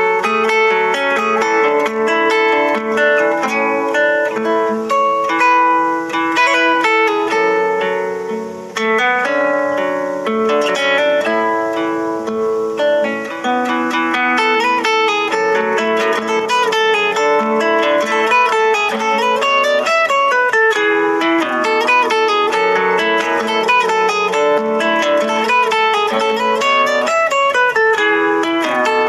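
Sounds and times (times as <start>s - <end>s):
plucked string instrument music: 0.0s - 29.0s.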